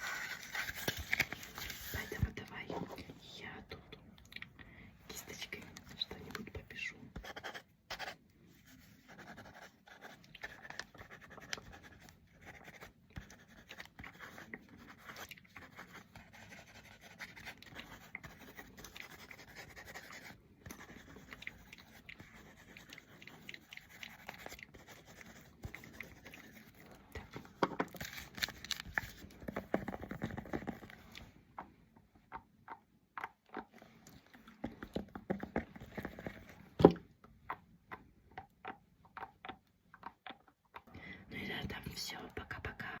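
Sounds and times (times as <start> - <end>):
paper rustling: 0.0 - 2.3.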